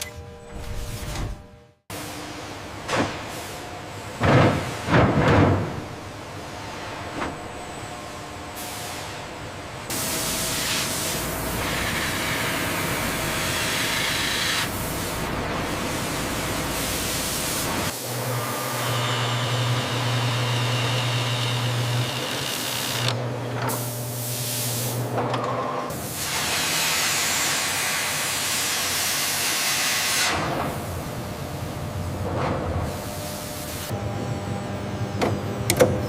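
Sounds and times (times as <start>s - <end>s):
machinery hum with high whine: 0.0s - 36.0s.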